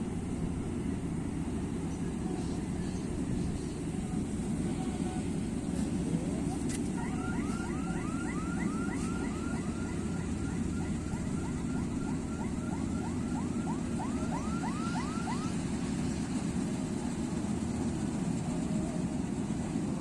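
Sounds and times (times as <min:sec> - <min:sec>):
diesel engine running: 0:00.0 - 0:20.0
siren-like warbling tone: 0:06.1 - 0:15.7.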